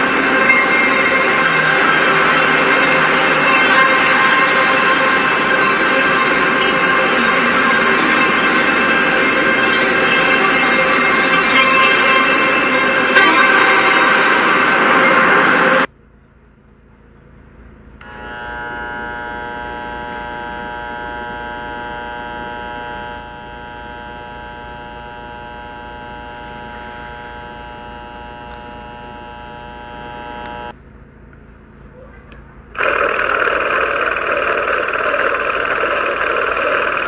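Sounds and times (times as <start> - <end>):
loud sound: 0.0 - 15.9, 32.8 - 37.0
steady buzzing tone: 0.0 - 31.8, 32.5 - 37.0.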